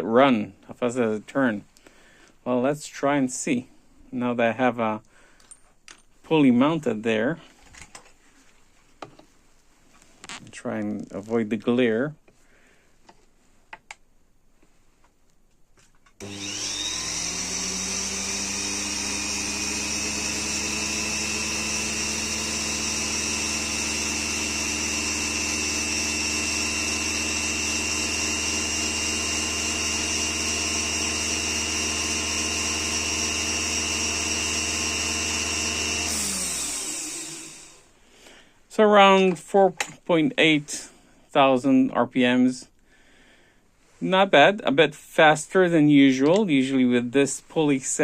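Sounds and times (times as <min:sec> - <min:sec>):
motor driving lathe whining: 0:16.2 - 0:37.8.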